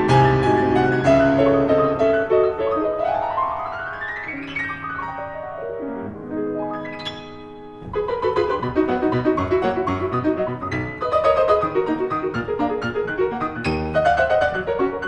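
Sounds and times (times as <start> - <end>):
piano music: 0.0 - 15.0.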